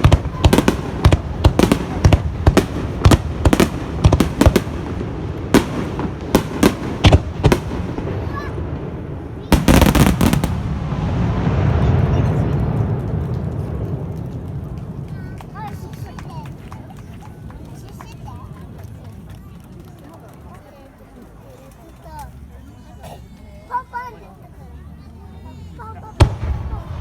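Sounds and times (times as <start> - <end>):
heavy blast: 0.0 - 15.0, 26.2 - 27.0
fireworks bursting: 0.0 - 19.0, 26.0 - 27.0.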